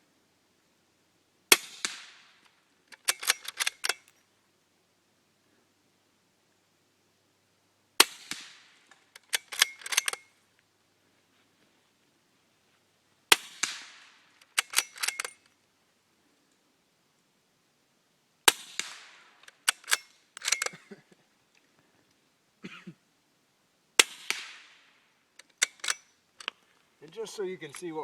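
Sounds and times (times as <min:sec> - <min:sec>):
suppressed rifle shots: 0:01.5 - 0:02.4, 0:08.0 - 0:10.2, 0:13.3 - 0:15.4, 0:18.5 - 0:20.7, 0:24.0 - 0:24.9
rifle bolt metallic clicks: 0:02.9 - 0:04.2, 0:08.3 - 0:10.3, 0:14.4 - 0:15.5, 0:18.8 - 0:20.8, 0:25.4 - 0:27.9.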